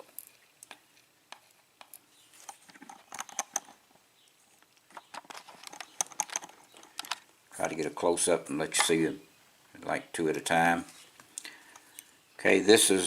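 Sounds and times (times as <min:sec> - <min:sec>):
small brass pins clicking: 0:00.1 - 0:07.3.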